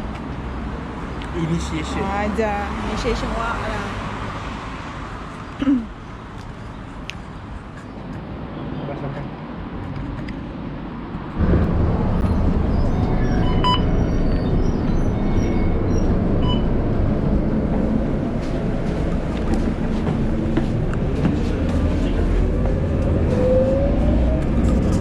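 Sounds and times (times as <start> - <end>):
rising whine: 11.4 - 19.0, 20.2 - 25.0
vehicle rumble from on board: 11.4 - 25.0.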